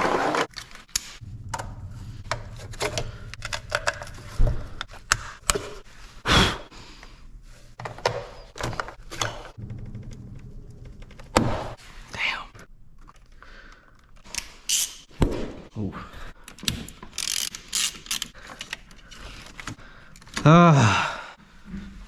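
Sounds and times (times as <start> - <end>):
steady low hum: 1.0 - 6.2, 9.5 - 13.1.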